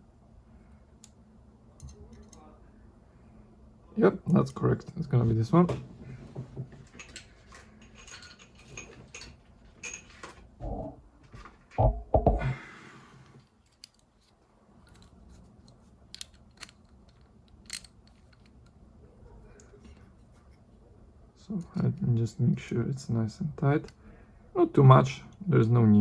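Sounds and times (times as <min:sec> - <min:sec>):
small metal parts clinking: 0:06.9 - 0:10.4, 0:16.1 - 0:18.7
heavier dull knocks: 0:11.8 - 0:12.5.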